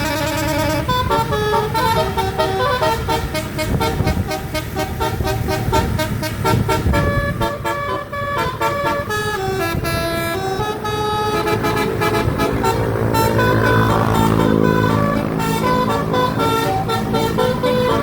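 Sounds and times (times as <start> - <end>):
multi-tone bus horn melody: 0.0 - 18.0
low rumble: 8.2 - 17.8.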